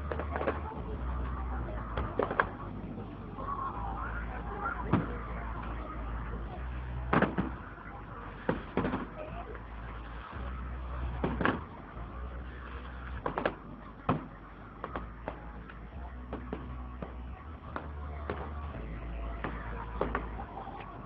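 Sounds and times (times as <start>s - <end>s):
crowd chatter: 0.0s - 21.0s
fireworks bangs: 4.4s - 9.3s, 19.4s - 20.5s.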